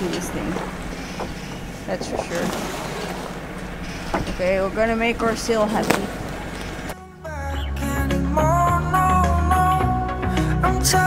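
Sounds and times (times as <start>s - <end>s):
low steady bass: 3.2s - 11.0s.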